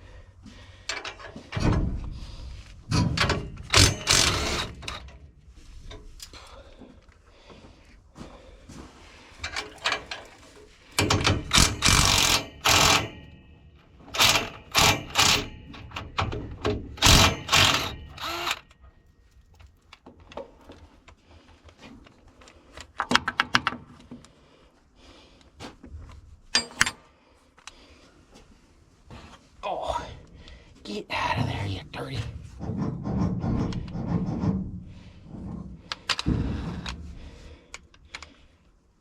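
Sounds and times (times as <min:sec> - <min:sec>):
tool mechanical rattling: 0:02.9 - 0:05.3, 0:09.4 - 0:18.8.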